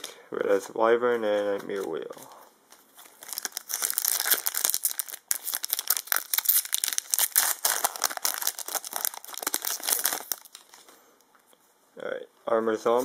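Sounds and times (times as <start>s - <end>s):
wrapper crinkling and tearing: 2.9s - 10.8s.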